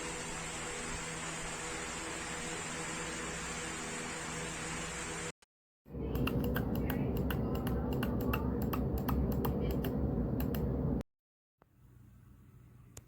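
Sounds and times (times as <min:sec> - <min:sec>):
steady hiss: 0:00.0 - 0:05.3
low hum: 0:05.9 - 0:11.0.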